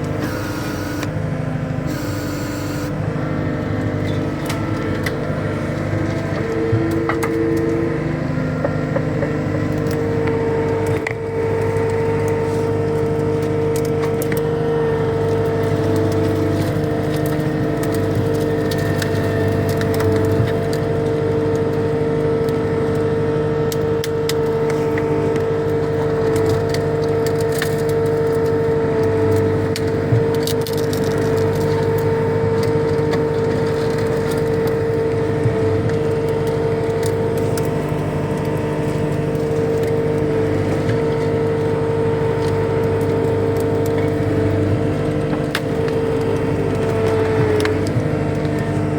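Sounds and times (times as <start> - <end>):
diesel engine running under load: 0.0 - 48.9
branches cracking and snapping: 9.2 - 21.8, 23.7 - 48.9.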